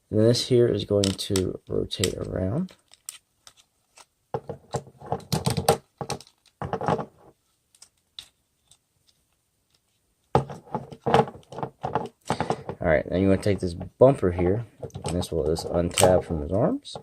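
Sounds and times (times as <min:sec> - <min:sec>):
plastic toy parts clicking: 0:01.0 - 0:04.1, 0:04.7 - 0:06.6.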